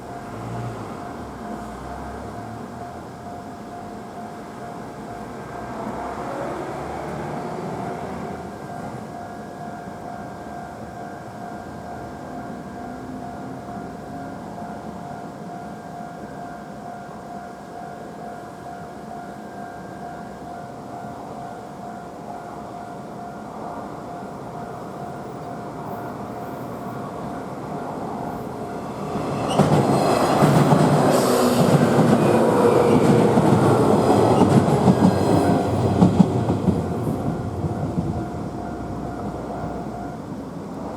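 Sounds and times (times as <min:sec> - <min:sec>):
train wheels clattering: 0:28.0 - 0:40.0.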